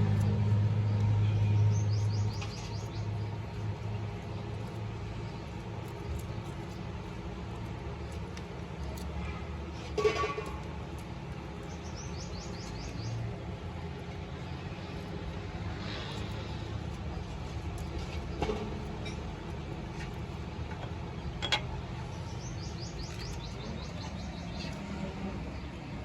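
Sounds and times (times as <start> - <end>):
steady low hum: 0.0 - 26.0
small bird chirping: 1.2 - 8.2, 11.0 - 15.2, 22.0 - 25.2.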